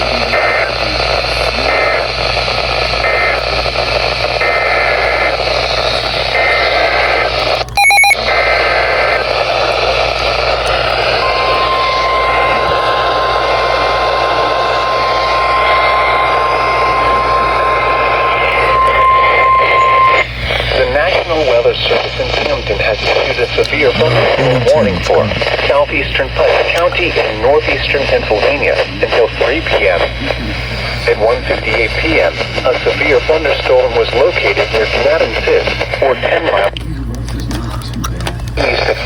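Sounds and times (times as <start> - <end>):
radio static hiss: 0.0 - 7.6, 8.2 - 36.8, 38.6 - 39.0
steady alarm tone: 11.0 - 20.2
data tone bursts: 11.2 - 20.3.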